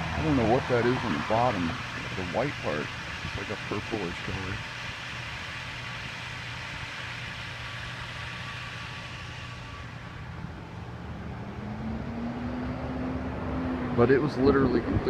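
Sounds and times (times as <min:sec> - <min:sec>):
low drone rising in pitch: 0:00.0 - 0:04.4, 0:08.2 - 0:15.0
outdoor noise: 0:00.0 - 0:15.0
vehicle engine humming: 0:00.0 - 0:15.0.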